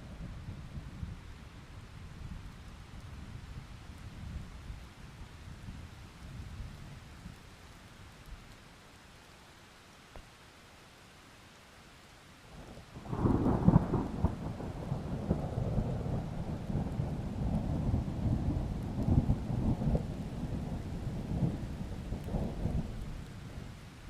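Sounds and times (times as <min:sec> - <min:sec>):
light rain hissing: 0:00.0 - 0:24.0
thunder rumbling: 0:13.0 - 0:23.8.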